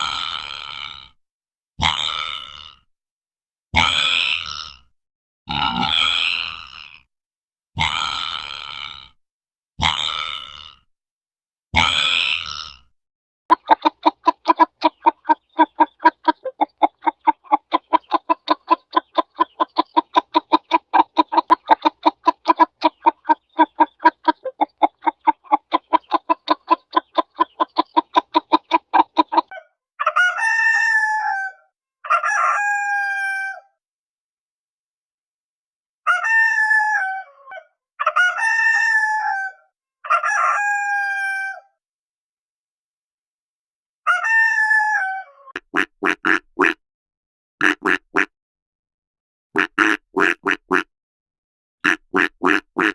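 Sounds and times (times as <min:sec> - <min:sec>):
hen clucking: 0:13.5 - 0:29.6, 0:49.6 - 0:50.8, 0:51.9 - 0:52.9
rooster crowing: 0:36.1 - 0:41.7, 0:44.1 - 0:45.5.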